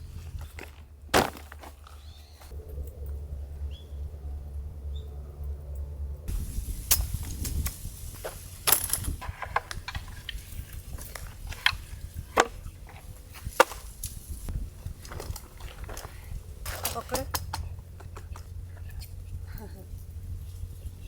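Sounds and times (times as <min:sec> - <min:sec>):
firewood chopping knocks and cracks: 0:00.5 - 0:01.8.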